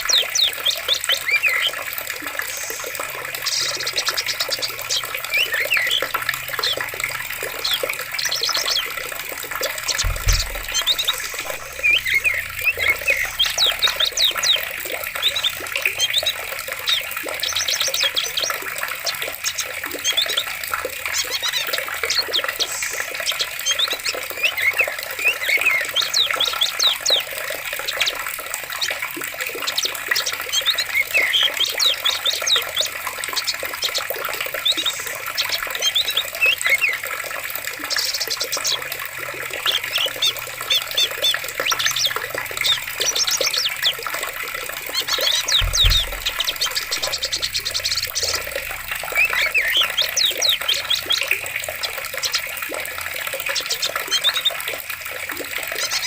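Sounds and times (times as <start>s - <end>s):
small birds chirping: 0.0s - 54.8s
running water: 0.0s - 56.0s
low thump: 10.0s - 11.6s, 45.6s - 47.2s.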